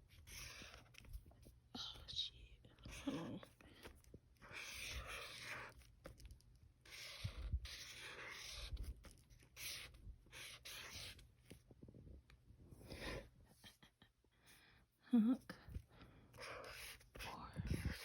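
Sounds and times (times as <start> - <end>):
pen writing on paper: 0.1 - 1.0, 4.4 - 5.9, 6.8 - 11.2, 16.4 - 18.0.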